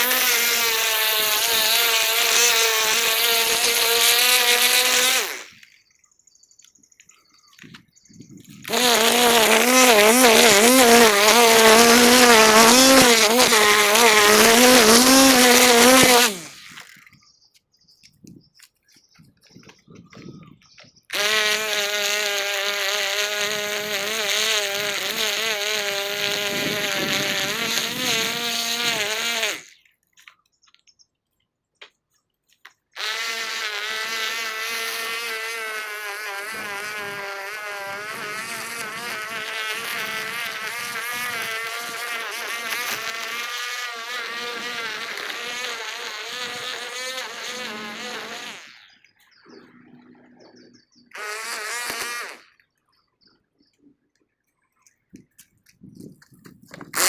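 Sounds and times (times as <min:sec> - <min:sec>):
string trimmer engine running: 0:00.0 - 0:05.7, 0:08.6 - 0:17.1, 0:21.1 - 0:29.8, 0:33.0 - 0:49.0, 0:51.1 - 0:52.5.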